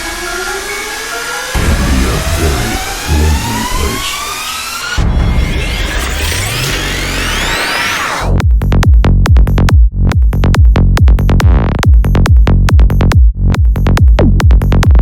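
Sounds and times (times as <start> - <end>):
rising synth sweep: 0.0 - 8.4
heavy bass-driven dance beat: 0.0 - 15.0.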